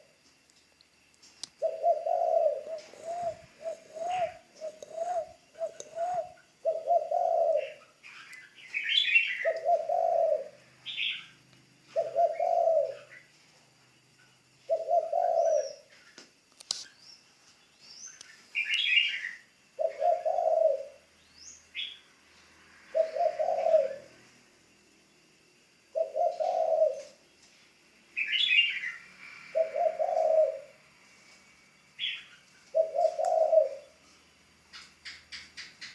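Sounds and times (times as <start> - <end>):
small birds chirping: 1.3 - 13.3, 14.2 - 22.4, 26.0 - 27.5, 28.1 - 30.8, 31.8 - 35.9
dove cooing: 1.6 - 11.3, 11.9 - 13.3, 14.7 - 15.9, 18.8 - 21.1, 22.9 - 24.3, 25.9 - 27.2, 28.2 - 30.9, 32.0 - 34.0.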